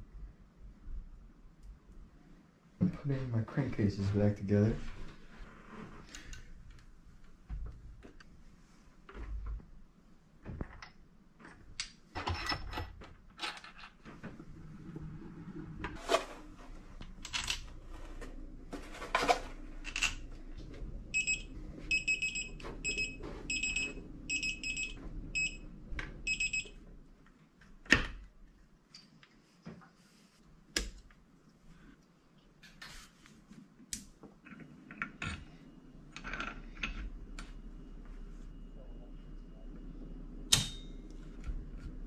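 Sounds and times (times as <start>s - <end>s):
electronic beeps: 21.1s - 25.6s, 26.3s - 26.8s.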